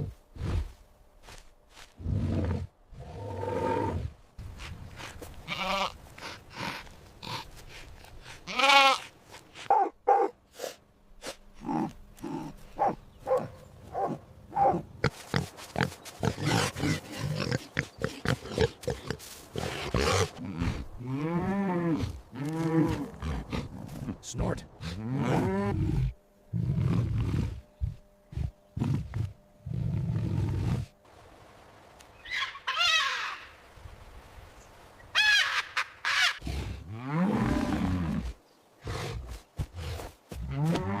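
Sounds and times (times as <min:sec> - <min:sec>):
pigs grunting: 0:05.0 - 0:09.1, 0:14.6 - 0:30.9.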